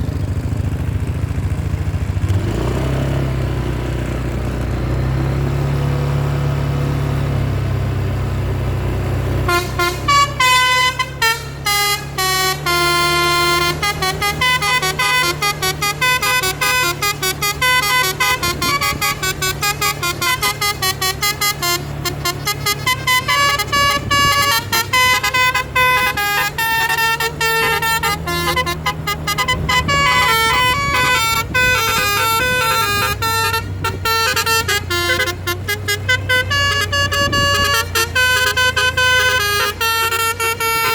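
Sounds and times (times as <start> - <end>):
bus engine humming: 0.0 - 40.9
musical bus horn melody: 8.8 - 40.9.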